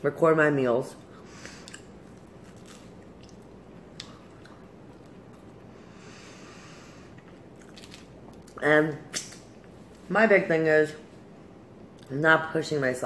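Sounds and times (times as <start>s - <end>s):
person chewing food: 1.0s - 5.9s, 6.8s - 8.6s.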